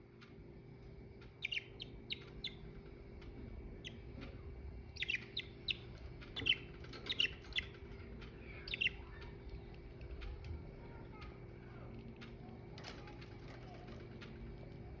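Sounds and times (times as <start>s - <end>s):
budgerigars chirping: 1.4s - 2.6s, 3.8s - 4.0s, 4.9s - 7.8s, 8.4s - 9.2s.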